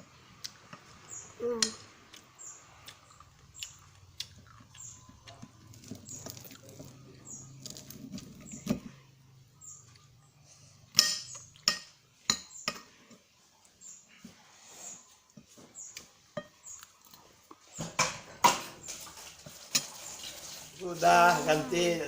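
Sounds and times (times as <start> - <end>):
child chewing with mouth smacks: 0.2 - 9.1, 13.0 - 17.8.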